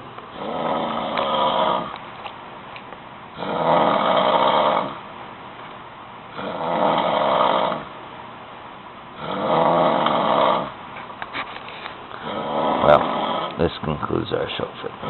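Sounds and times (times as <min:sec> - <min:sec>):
person snoring loudly: 0:00.3 - 0:01.9, 0:03.4 - 0:05.0, 0:06.4 - 0:07.9, 0:09.2 - 0:10.7, 0:12.2 - 0:13.6.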